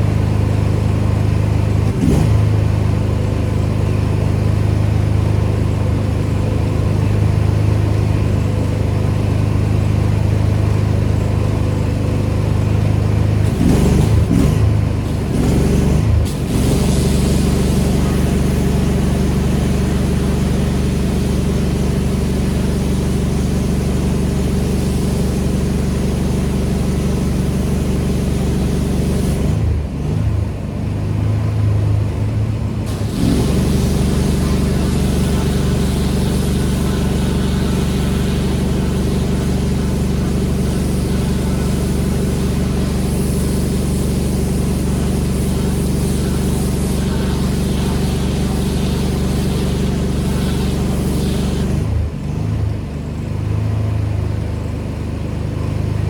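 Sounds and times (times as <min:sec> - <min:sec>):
pressure washer engine running: 0:00.0 - 0:56.0
pressure washer hiss: 0:15.0 - 0:29.6, 0:32.9 - 0:52.0.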